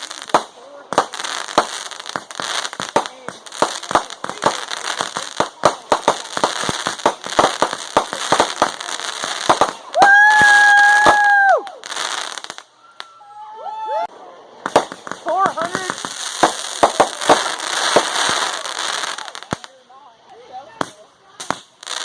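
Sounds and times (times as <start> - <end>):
fireworks bangs and crackles: 0.0 - 12.7, 14.6 - 19.8, 20.7 - 22.0
whistling firework: 9.5 - 13.4.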